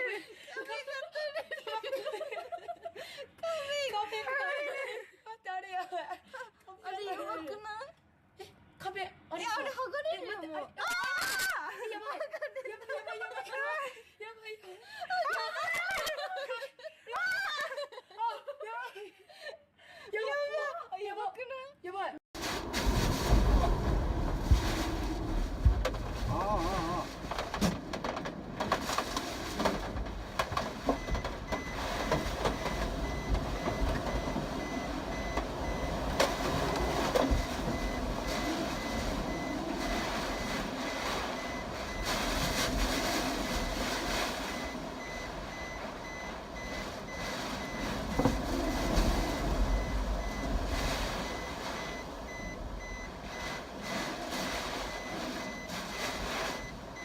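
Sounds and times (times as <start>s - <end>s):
high electronic beeping: 30.8s - 42.5s, 43.6s - 48.4s, 49.0s - 50.6s, 51.2s - 53.6s, 54.8s - 57.0s.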